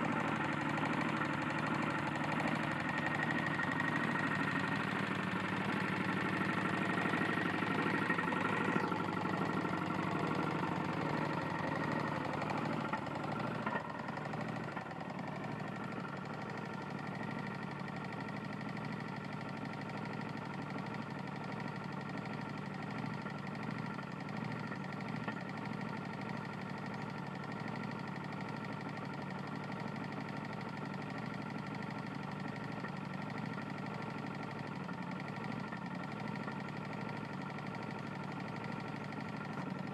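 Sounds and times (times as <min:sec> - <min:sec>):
lawn mower engine knocking: 0:00.0 - 0:39.9.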